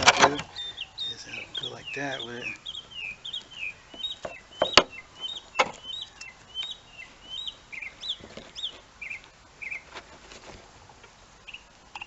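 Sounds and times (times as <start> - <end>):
small birds chirping: 0.0 - 12.0
sharp knocks: 3.9 - 5.0.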